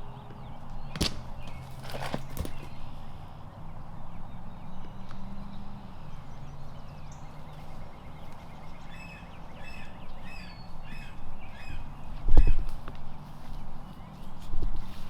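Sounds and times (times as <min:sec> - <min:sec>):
heavy thump: 0:00.9 - 0:02.8.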